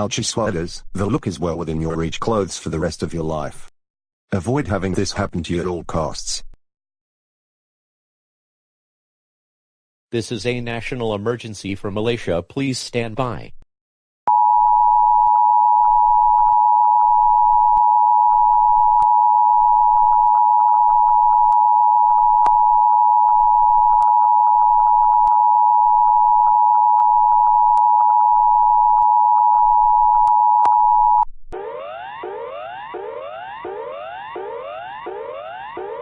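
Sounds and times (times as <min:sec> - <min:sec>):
steady electronic alert tone: 0:31.6 - 0:36.0.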